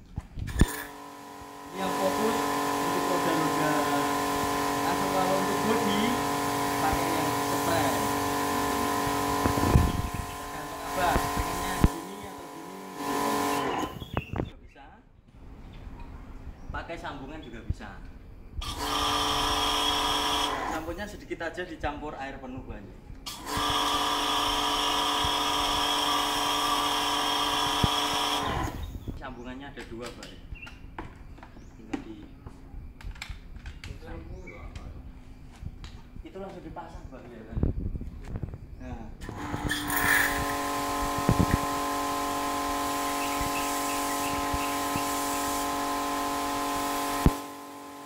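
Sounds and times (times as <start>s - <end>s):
pressure washer motor whining: 0.5s - 14.3s, 18.6s - 21.0s, 23.2s - 29.0s, 39.2s - 48.0s
water spraying hiss: 0.6s - 13.9s, 39.3s - 48.0s.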